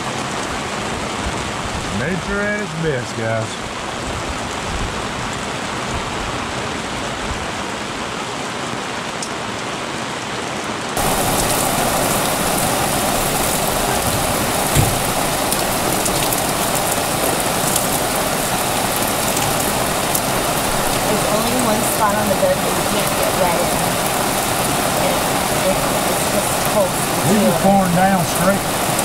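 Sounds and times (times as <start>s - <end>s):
heavy rain on water: 0.0s - 29.0s
low thump: 14.1s - 15.3s.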